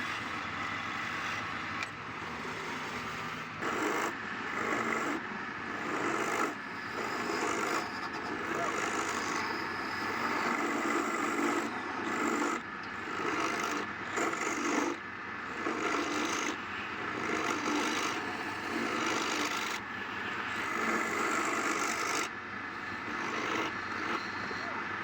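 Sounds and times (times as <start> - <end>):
wood lathe spinning: 0.0 - 25.0
tool scraping wood: 5.8 - 12.6.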